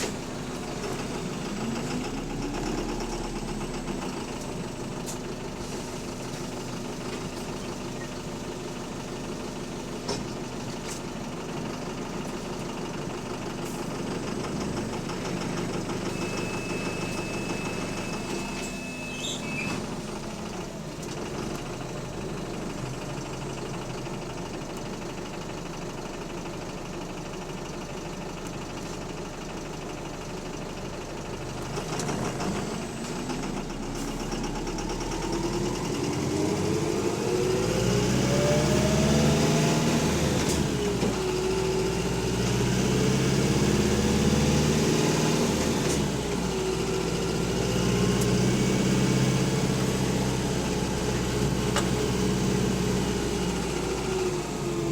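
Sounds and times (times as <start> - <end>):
bus engine with rod knock: 0.0 - 21.9, 31.3 - 54.6.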